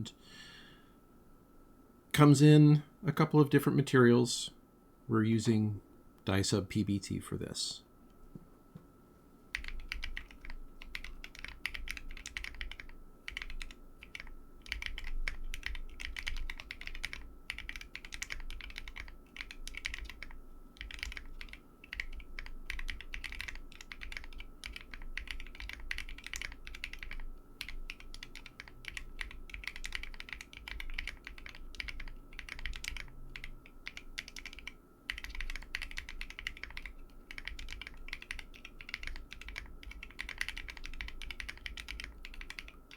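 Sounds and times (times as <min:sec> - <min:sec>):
mechanical keyboard typing: 0:09.5 - 0:42.9.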